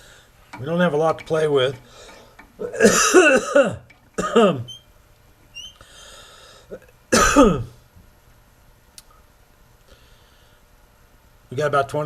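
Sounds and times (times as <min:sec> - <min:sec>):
man coughing: 0:02.6 - 0:04.6, 0:06.7 - 0:07.8.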